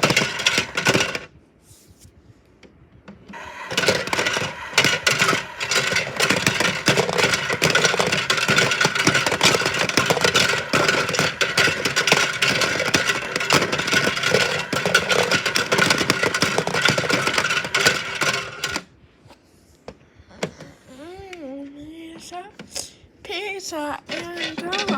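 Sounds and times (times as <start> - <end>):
fast rattling of turning drum: 0.0 - 1.3, 3.4 - 18.8, 24.1 - 24.9
toy washing machine motor humming: 0.0 - 1.3, 3.3 - 18.9, 24.1 - 24.9.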